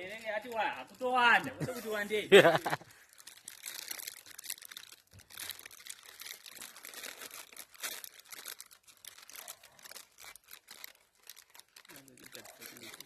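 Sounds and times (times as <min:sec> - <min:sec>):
dry leaves and twigs rustling: 0:00.0 - 0:13.0
crunches: 0:02.6 - 0:13.0.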